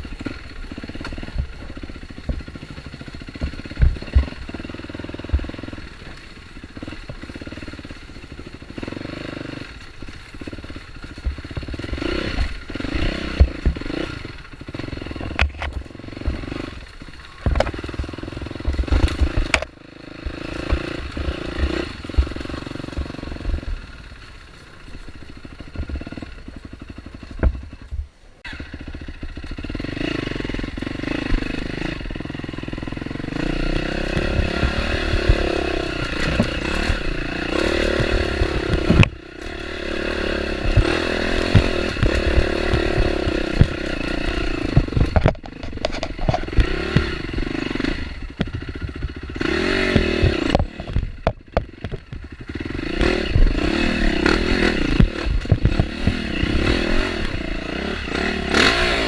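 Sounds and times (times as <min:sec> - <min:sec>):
motorcycle clattering over rough ground: 0:00.0 - 0:59.0
motorcycle engine revving: 0:00.0 - 0:59.0.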